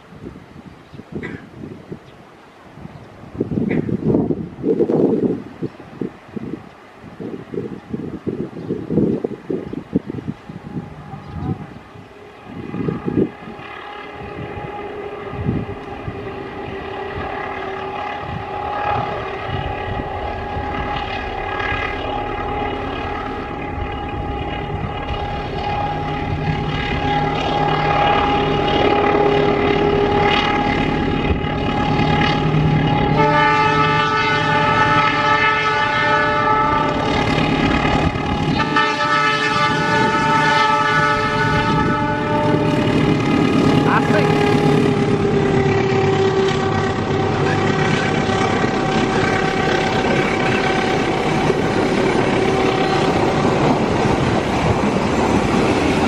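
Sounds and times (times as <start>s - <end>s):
diesel locomotive approaching: 0.0s - 56.0s
high humming whine: 10.5s - 56.0s
locomotive horn chord blast: 10.9s - 56.0s.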